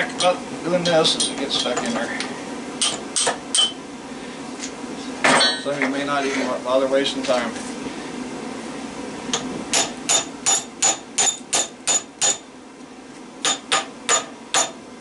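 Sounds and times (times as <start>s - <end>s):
hammer striking steel punch: 9.7s - 12.4s, 13.4s - 14.8s.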